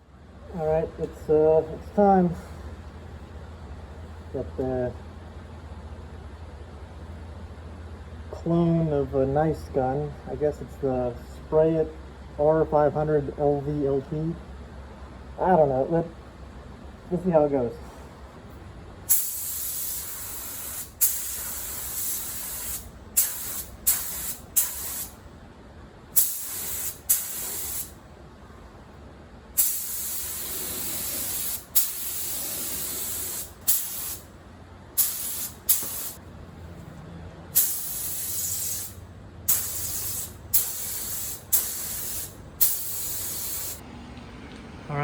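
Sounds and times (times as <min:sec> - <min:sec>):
paint spray gun air hiss: 0:19.1 - 0:25.2, 0:26.2 - 0:28.0, 0:29.6 - 0:34.3, 0:35.0 - 0:36.2, 0:37.6 - 0:43.8.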